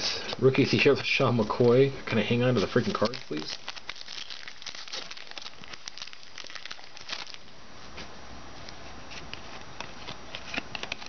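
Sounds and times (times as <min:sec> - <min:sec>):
wrapper crinkling: 0:01.4 - 0:07.6
cards being handled: 0:02.5 - 0:05.9, 0:09.1 - 0:11.0.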